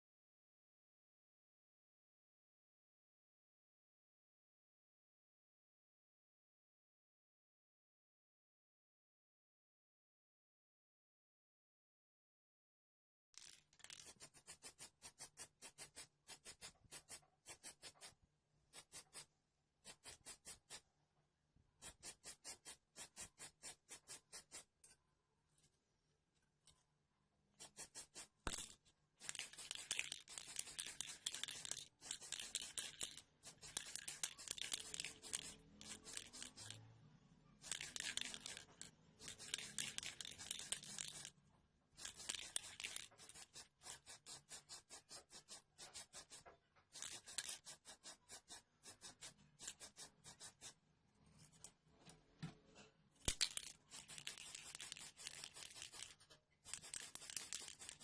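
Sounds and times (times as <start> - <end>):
abrasive scraping on small part: 27.6 - 36.9, 37.6 - 41.4.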